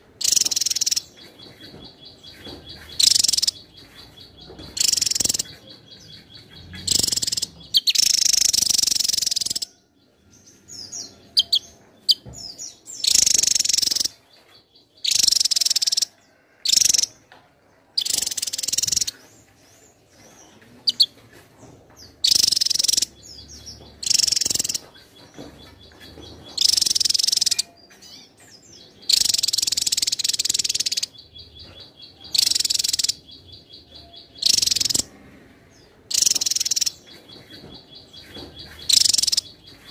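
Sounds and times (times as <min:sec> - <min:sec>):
bird singing rapid jumbled song: 0:00.0 - 0:17.2, 0:18.0 - 0:39.9.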